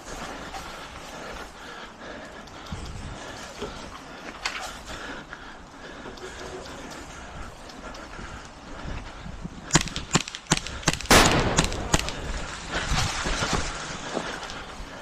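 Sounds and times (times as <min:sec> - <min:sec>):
airsoft gun shots: 0:09.7 - 0:12.3.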